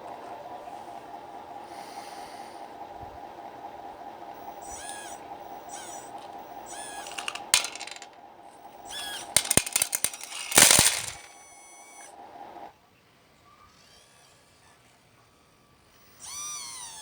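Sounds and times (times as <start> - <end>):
metallic clinks and clicks: 7.0 - 8.1, 9.4 - 11.3
loud rattling rush: 9.4 - 11.3.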